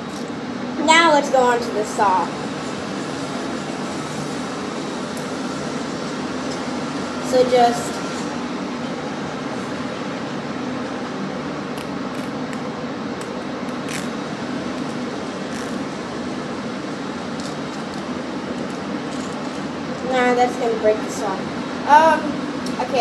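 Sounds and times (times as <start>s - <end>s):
air conditioner humming: 0.0s - 23.0s
multi-tool clicks and scrapes: 18.6s - 19.6s.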